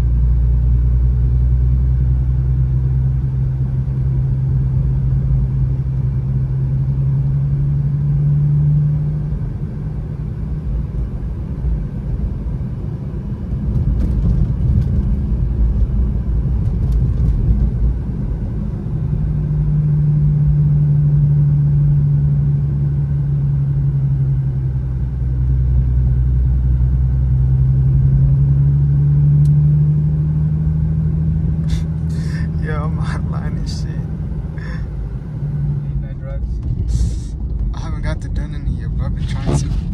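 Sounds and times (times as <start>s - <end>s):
car engine hum inside cabin: 0.0s - 39.9s
tyre and road noise: 30.6s - 39.9s.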